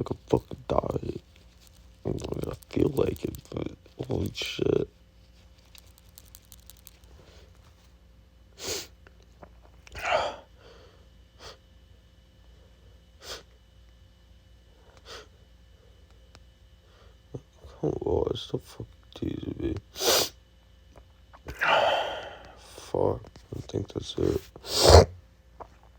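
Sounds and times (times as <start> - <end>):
man sneezing: 10.0 - 10.4, 21.5 - 22.6, 24.6 - 25.2.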